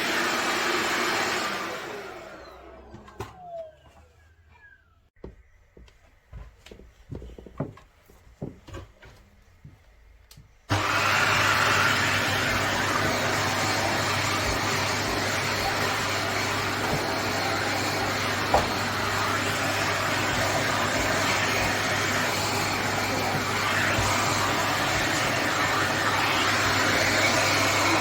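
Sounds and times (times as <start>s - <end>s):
vacuum cleaner motor running: 0.0s - 4.8s, 10.7s - 28.0s.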